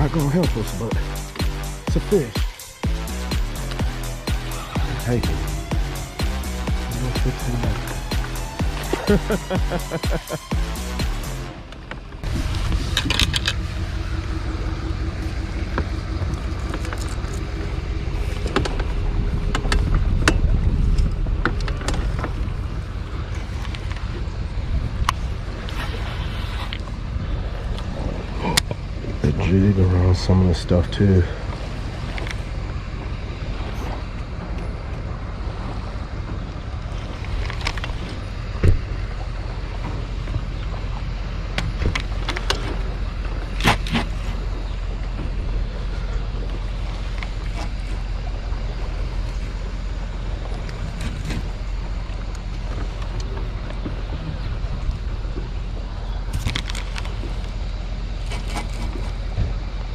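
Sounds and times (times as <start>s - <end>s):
boat motor rumble: 0.0s - 59.9s
sharp rattles and clicks: 11.7s - 24.2s, 56.3s - 57.6s
wind on microphone: 12.2s - 29.4s
dull thump: 38.6s - 39.0s.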